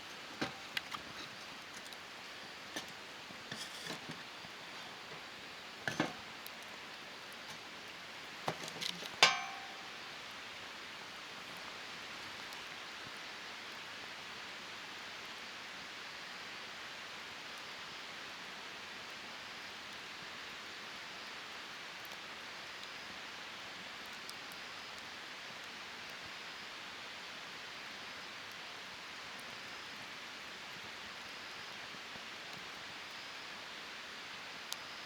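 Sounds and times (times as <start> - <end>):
wood fire hissing and crackling: 0.0 - 35.0
metal clank: 5.9 - 6.3, 8.5 - 10.1.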